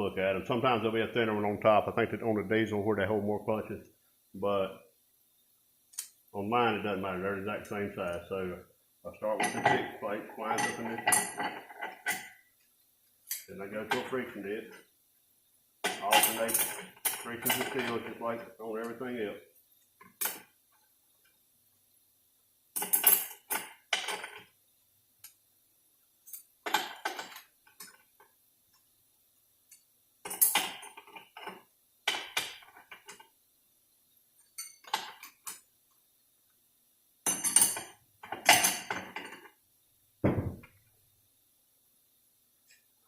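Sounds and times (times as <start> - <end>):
metal plates clinking: 9.3 - 12.4, 15.8 - 18.2, 22.8 - 24.4, 30.2 - 33.2, 37.3 - 39.5
dull knock: 40.2 - 40.7.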